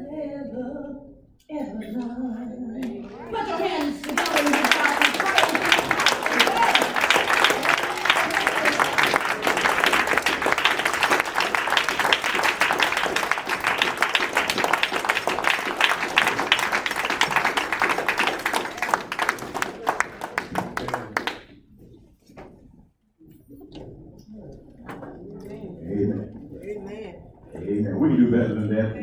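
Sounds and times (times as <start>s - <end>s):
congregation clapping: 2.8s - 21.6s.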